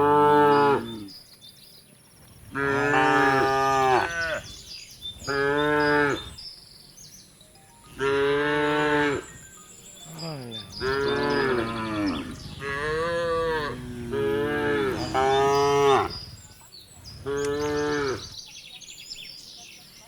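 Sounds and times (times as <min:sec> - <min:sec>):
cattle mooing: 0:00.0 - 0:01.0, 0:02.5 - 0:04.4, 0:07.9 - 0:09.3, 0:10.3 - 0:16.3, 0:17.2 - 0:18.3.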